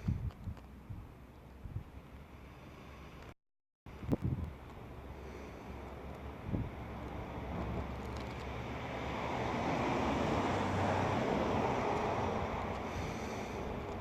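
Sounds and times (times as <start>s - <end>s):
wind gusting over microphone: 0.0s - 2.0s, 3.9s - 4.6s, 6.2s - 14.0s.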